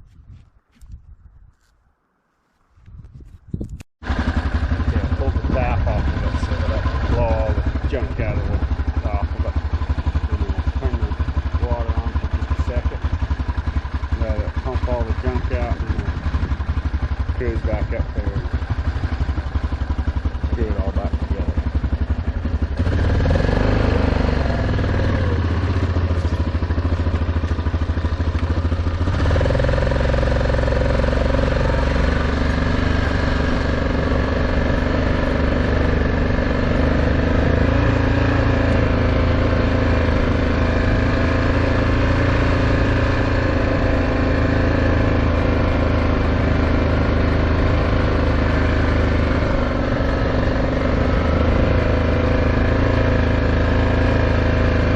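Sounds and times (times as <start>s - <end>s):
vehicle engine running: 4.0s - 54.9s.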